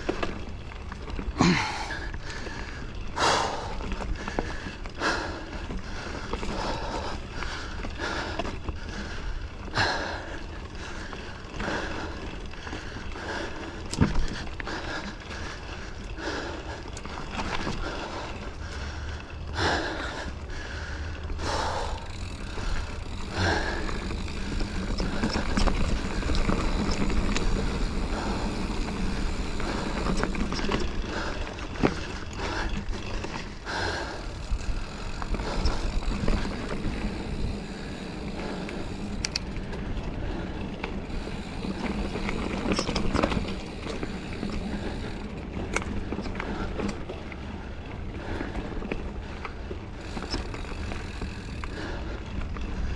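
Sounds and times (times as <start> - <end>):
bike rattles and knocks: 0.0 - 52.9
bike tyres on rocky trail: 0.0 - 52.9
steady rumble: 0.0 - 52.9.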